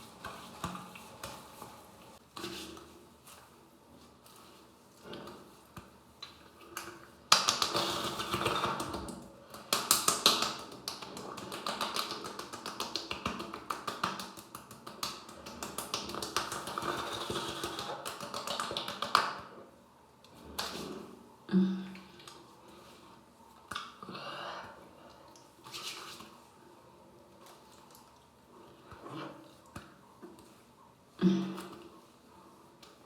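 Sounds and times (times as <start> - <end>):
rapid tapping and patting: 7.3 - 19.4.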